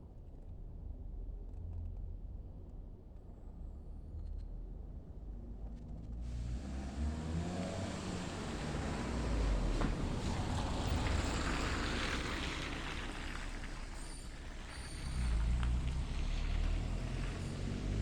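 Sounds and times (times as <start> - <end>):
passing vehicle hiss: 6.3 - 18.0.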